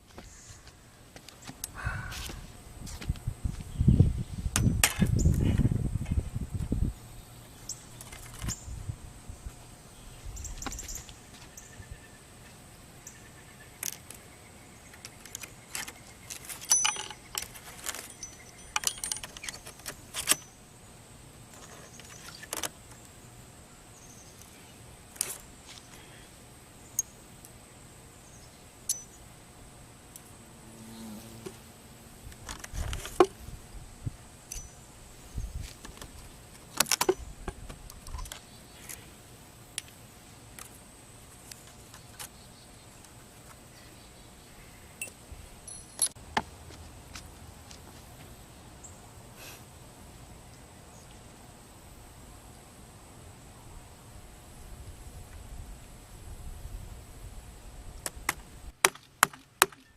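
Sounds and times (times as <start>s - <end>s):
hardware clicks and clinks: 15.2s - 20.6s, 28.9s - 29.2s, 45.0s - 46.2s
rumbling handling noise: 32.2s - 34.7s.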